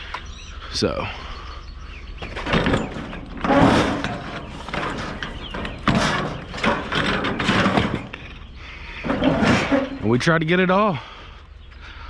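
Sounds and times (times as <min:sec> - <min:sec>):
scrap items banging and scraping: 0:02.2 - 0:10.3.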